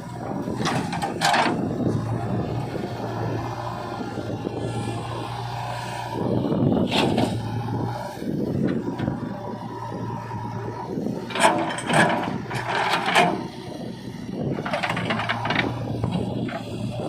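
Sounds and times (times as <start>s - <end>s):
diesel engine running: 0.0s - 17.0s
clattering knocks and scrapes: 0.5s - 1.6s, 11.3s - 13.5s, 14.6s - 16.7s.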